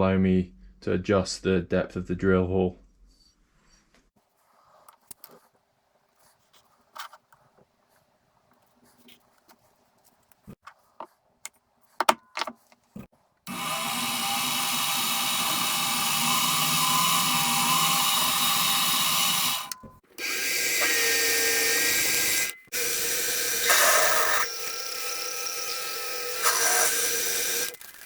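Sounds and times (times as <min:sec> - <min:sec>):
power drill boring through metal: 0:13.5 - 0:27.8.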